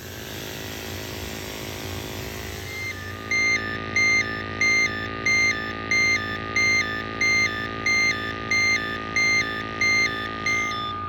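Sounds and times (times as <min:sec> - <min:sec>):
two-note alarm beeping: 0:02.7 - 0:11.0.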